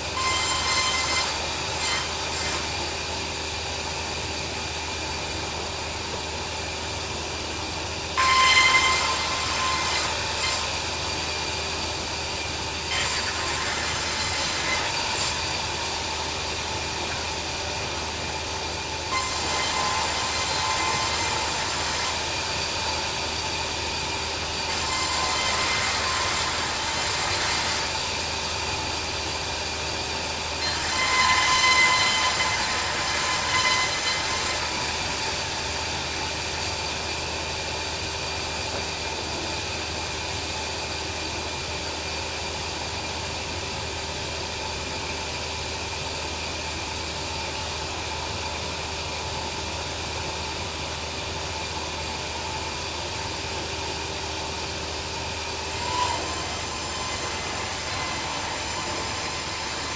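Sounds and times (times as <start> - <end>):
saw blade cutting timber: 0.0 - 3.6, 8.2 - 17.4, 19.1 - 37.2, 55.7 - 59.9
bandsaw mill humming: 0.0 - 43.2, 53.9 - 59.9.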